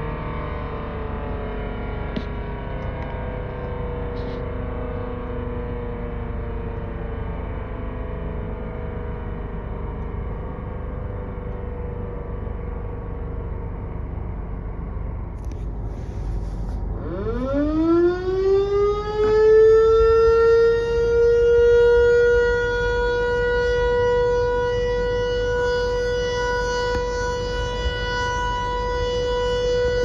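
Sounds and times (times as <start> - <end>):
distant siren sagging in pitch: 0.0 - 15.3, 16.0 - 30.0
low rumble: 0.0 - 18.4
warning siren rising to full pitch: 0.0 - 30.0.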